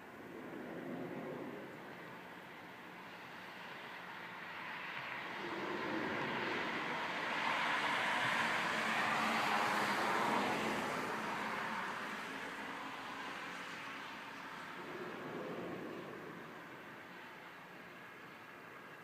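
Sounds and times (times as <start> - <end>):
passing vehicle rushing: 5.0 - 17.6.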